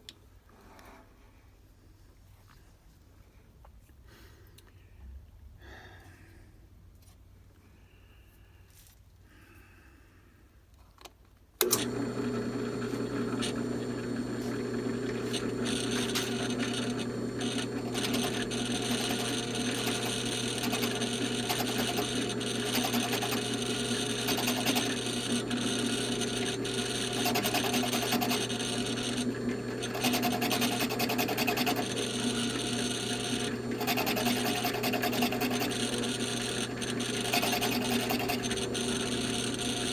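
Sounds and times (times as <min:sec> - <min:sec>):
power drill cutting wood: 0:11.6 - 0:39.9.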